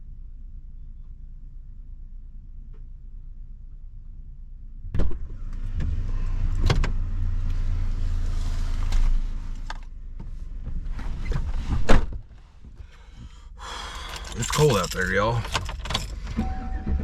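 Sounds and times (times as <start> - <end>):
outside rumble: 0.0 - 17.0.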